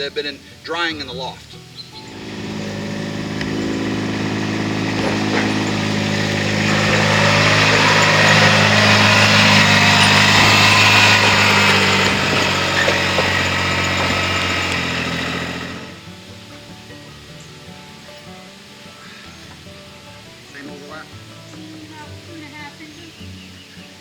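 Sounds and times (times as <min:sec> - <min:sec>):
vehicle engine running: 0:02.0 - 0:16.2.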